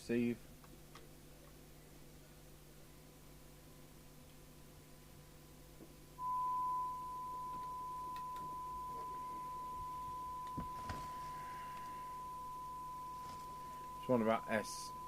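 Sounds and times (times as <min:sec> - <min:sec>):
radio test tone: 0:06.2 - 0:15.0.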